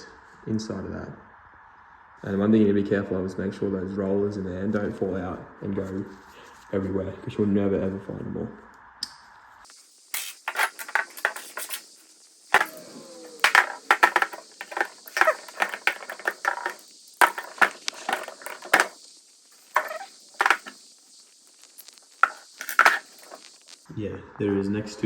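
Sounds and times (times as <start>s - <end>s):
metal parts clinking: 19.7s - 20.8s.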